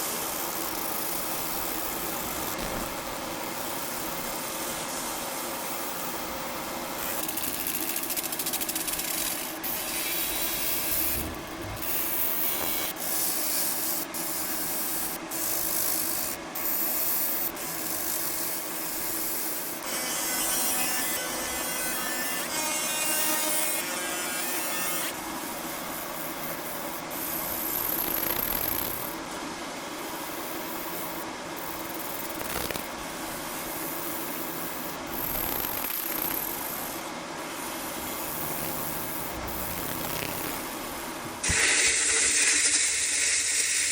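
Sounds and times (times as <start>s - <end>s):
machine hum: 0.6s - 13.0s, 34.8s - 43.9s
abrasive hiss: 33.7s - 43.9s.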